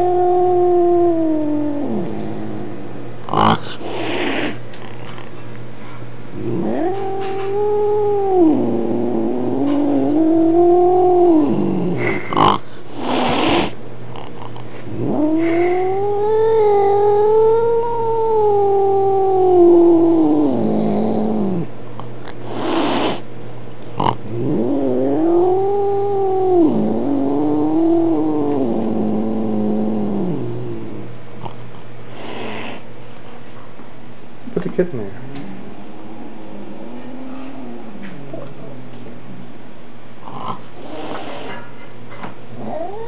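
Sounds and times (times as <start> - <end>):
cat yowling: 0.0 - 2.2, 6.4 - 12.0, 15.0 - 21.7, 24.3 - 30.8, 35.5 - 39.2, 42.6 - 43.0
cat hissing: 0.0 - 2.7, 3.3 - 4.7, 6.4 - 13.8, 14.8 - 21.7, 22.4 - 23.3, 24.0 - 31.1, 32.1 - 32.9, 40.4 - 41.7.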